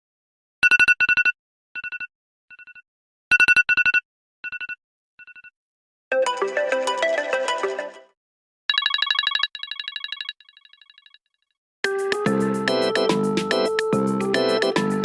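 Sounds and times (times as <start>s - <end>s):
melodic ringtone: 6.1s - 8.1s, 11.9s - 15.0s
electronic trill ringtone: 8.7s - 11.2s, 11.9s - 15.0s.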